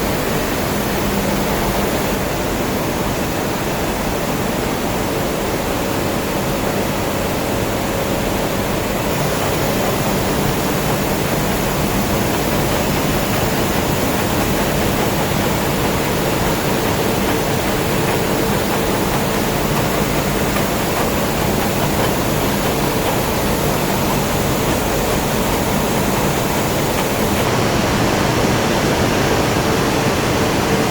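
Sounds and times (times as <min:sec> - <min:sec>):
furnace roaring: 0:09.0 - 0:30.9.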